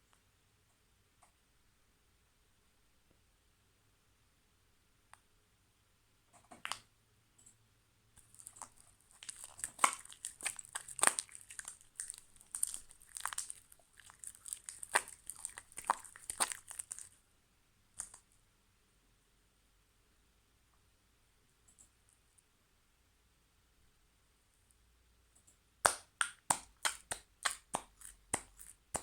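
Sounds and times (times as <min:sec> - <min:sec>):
slime crackling pops: 0:08.2 - 0:17.1, 0:25.9 - 0:29.0.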